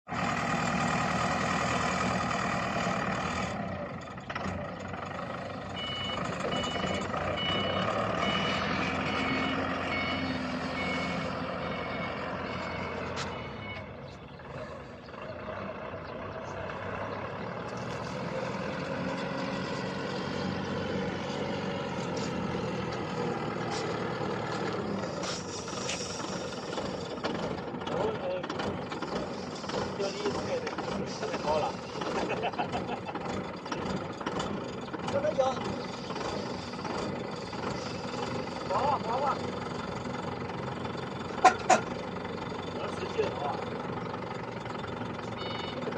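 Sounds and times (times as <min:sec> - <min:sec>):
reversing alarm beeping: 0:05.7 - 0:14.2, 0:45.3 - 0:45.9.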